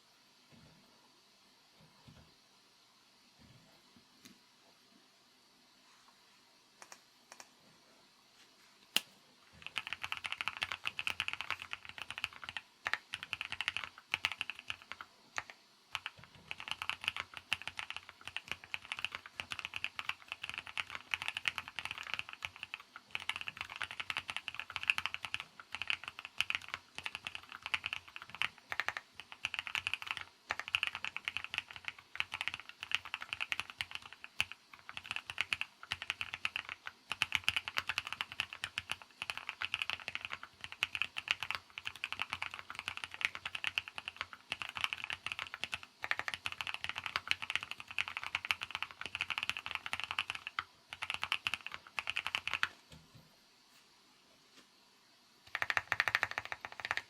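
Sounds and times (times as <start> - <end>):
mechanical keyboard typing: 6.8 - 7.5, 9.6 - 52.8, 55.5 - 57.0.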